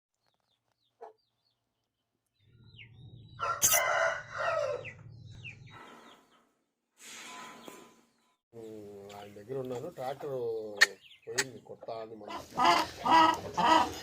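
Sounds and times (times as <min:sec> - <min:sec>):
rooster crowing: 0:03.4 - 0:05.0.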